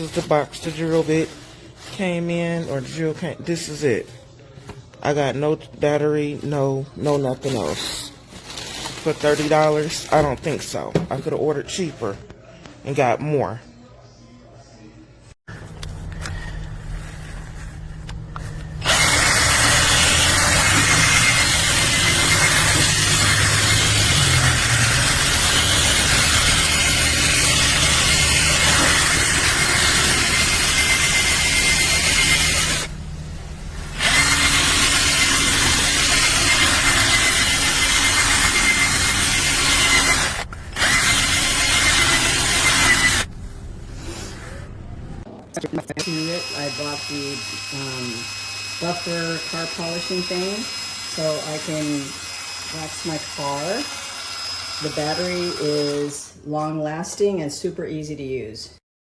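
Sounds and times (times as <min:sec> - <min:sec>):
cordless power tool motor running: 0:18.6 - 0:43.3, 0:46.0 - 0:56.2.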